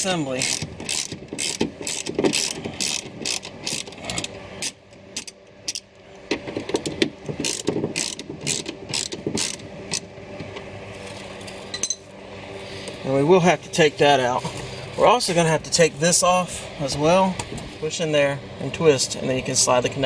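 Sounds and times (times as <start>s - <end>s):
hand ratchet clicking: 0.4s - 5.8s, 7.4s - 10.0s.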